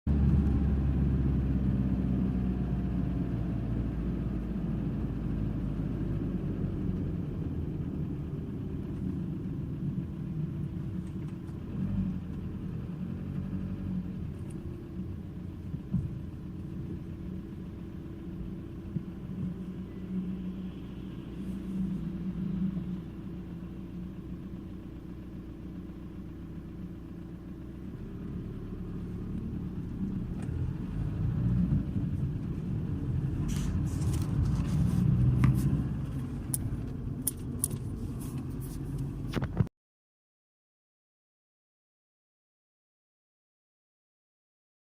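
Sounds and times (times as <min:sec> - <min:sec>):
diesel engine running: 0:00.1 - 0:39.7.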